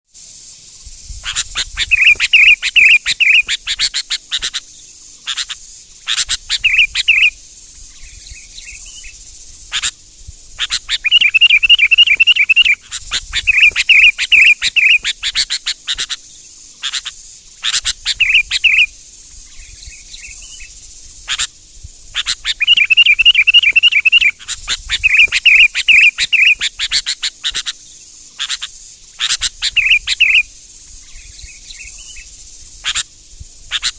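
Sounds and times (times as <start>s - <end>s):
steady high hiss: 0.1s - 33.9s
sharp short bird calls: 1.2s - 4.6s, 10.6s - 16.2s, 22.2s - 27.8s, 28.4s - 30.4s
bird singing trilled phrases: 1.2s - 10.0s, 10.6s - 21.5s, 22.2s - 33.1s.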